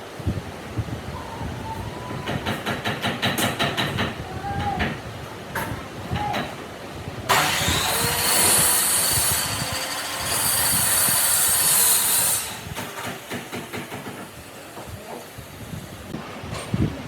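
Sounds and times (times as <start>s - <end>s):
electric power tool running: 7.3s - 16.1s.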